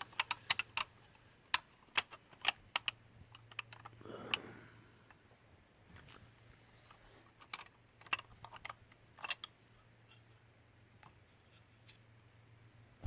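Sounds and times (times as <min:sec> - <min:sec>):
plastic toy parts clicking: 0:00.0 - 0:04.4, 0:07.4 - 0:09.6
faint low hum: 0:00.0 - 0:13.0.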